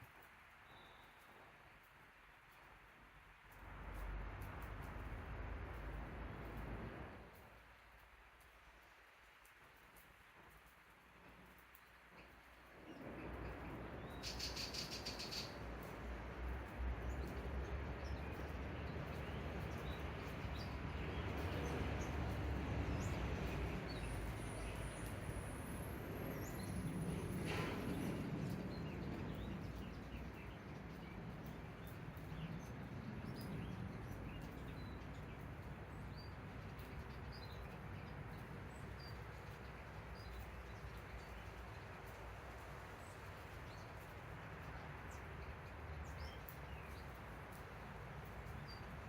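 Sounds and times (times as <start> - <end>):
outdoor background noise: 0.0 - 49.0
small birds chirping: 12.9 - 42.3.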